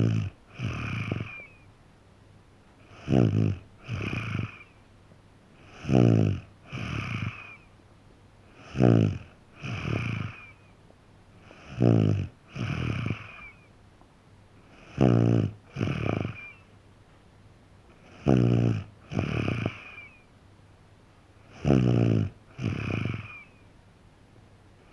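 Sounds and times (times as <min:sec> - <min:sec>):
child snoring: 0:00.0 - 0:01.6, 0:02.8 - 0:04.8, 0:05.6 - 0:07.7, 0:08.6 - 0:10.6, 0:11.4 - 0:13.6, 0:14.6 - 0:16.7, 0:18.0 - 0:20.2, 0:21.5 - 0:23.6.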